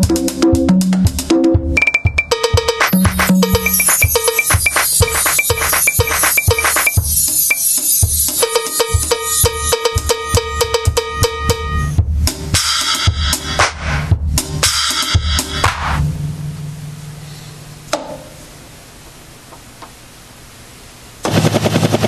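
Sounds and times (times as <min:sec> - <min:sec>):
repeating sampler note: 0:00.0 - 0:12.0
drum kit played hard: 0:00.0 - 0:16.4.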